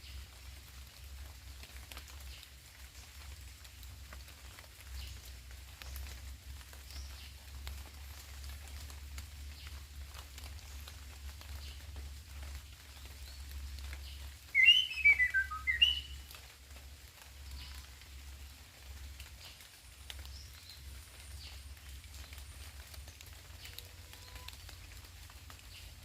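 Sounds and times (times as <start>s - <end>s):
faint steady patter: 0.0s - 26.0s
songbird whistling: 14.5s - 16.2s.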